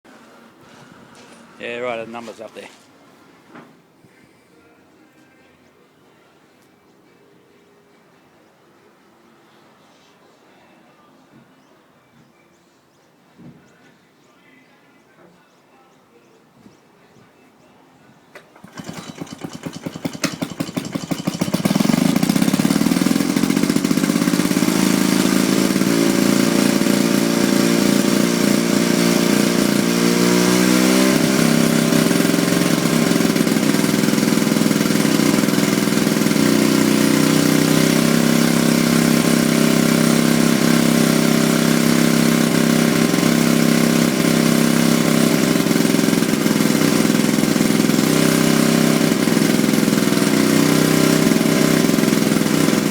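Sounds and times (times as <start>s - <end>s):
lawn mower engine starting and running: 0.1s - 2.8s, 18.4s - 52.9s.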